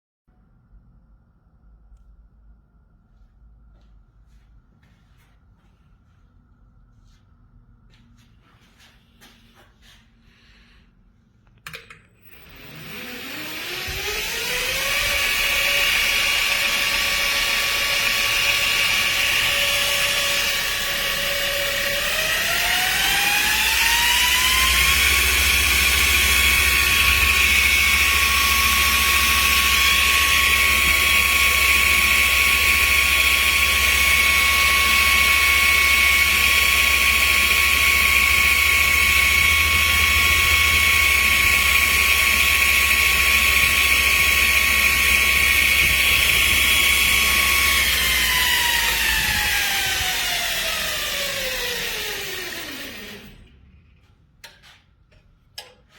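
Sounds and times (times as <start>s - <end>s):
belt grinder whine: 12.2s - 54.0s.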